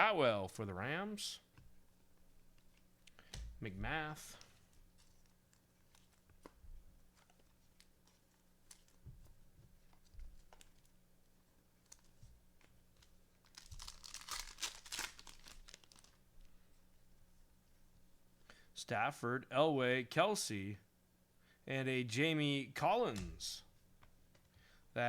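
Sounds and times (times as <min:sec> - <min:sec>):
foil wrapper crinkling and tearing: 0:13.0 - 0:16.2
trading cards shuffling clicks: 0:23.0 - 0:23.5.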